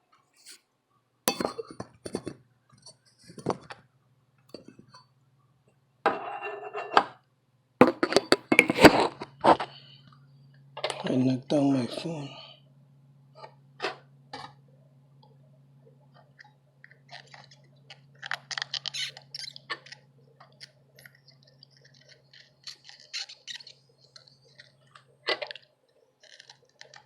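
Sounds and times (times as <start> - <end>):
clicks taps and scrapes of handling: 1.3 - 3.8.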